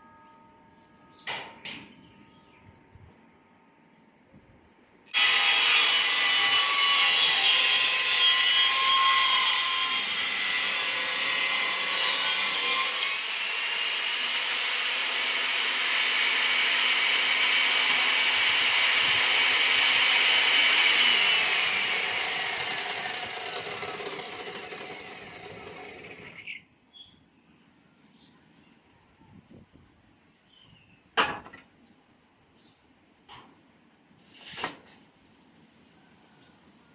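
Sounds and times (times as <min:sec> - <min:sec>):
power saw cutting wood: 0:05.1 - 0:26.6.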